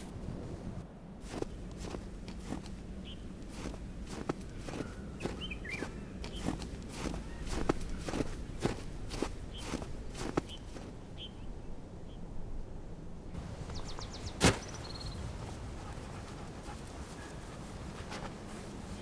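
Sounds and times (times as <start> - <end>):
footsteps crunching in snow: 0.0 - 11.0, 13.8 - 19.0.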